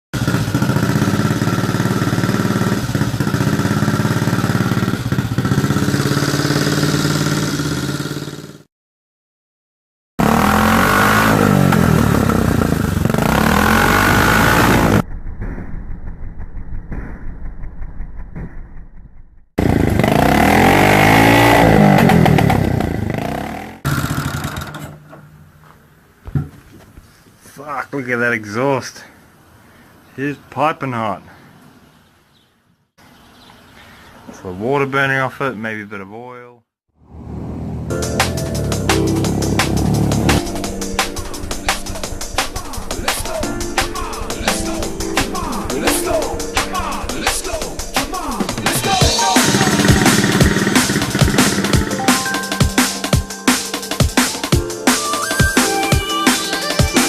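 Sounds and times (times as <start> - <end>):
motorcycle engine fast idle: 0.2 - 8.5, 23.9 - 24.9, 47.9 - 51.9
motorcycle engine revving and idling: 0.2 - 8.7, 10.2 - 25.1, 37.0 - 52.0.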